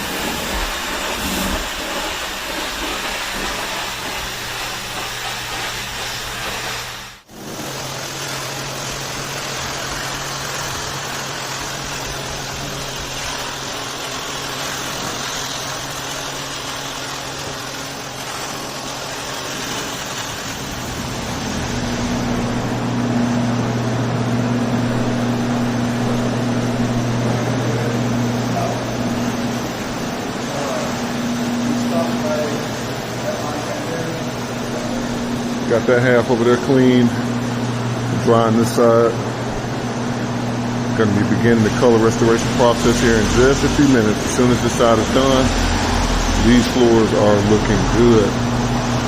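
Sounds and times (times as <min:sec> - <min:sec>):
rushing hiss of air: 0:00.0 - 0:07.8
cleaning machine motor hum: 0:00.0 - 0:49.0.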